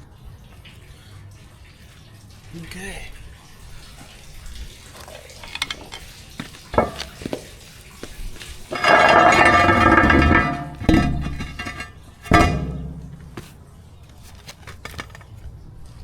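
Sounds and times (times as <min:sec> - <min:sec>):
metal clinking and knocking: 0:05.4 - 0:07.5, 0:08.7 - 0:13.8.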